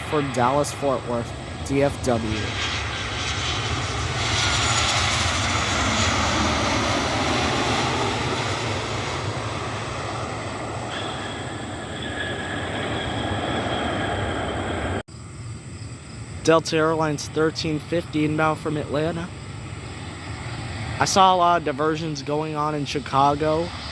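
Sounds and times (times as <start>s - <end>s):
jet airliner passing roar: 0.0s - 23.9s
jet engine whine falling: 0.0s - 23.9s.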